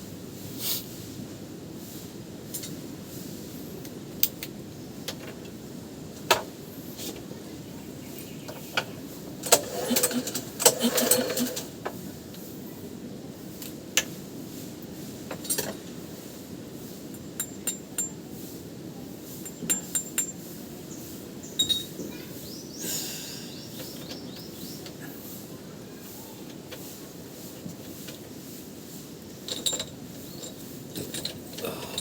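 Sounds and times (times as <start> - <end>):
scraping rattle: 9.5 - 11.7
metal tools clinking: 21.6 - 22.0, 29.4 - 32.0.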